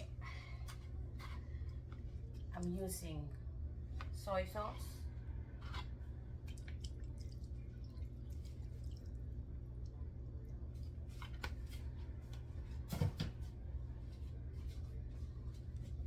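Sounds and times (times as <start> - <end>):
small drips and splashes: 6.3 - 11.6.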